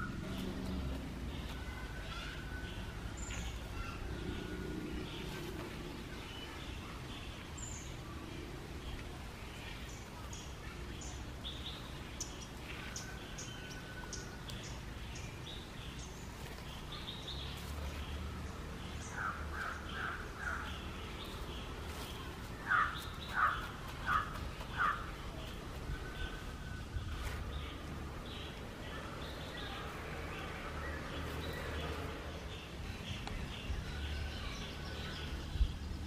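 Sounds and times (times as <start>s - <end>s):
small birds chirping: 0.0s - 36.0s
bird harsh calls: 18.9s - 32.0s.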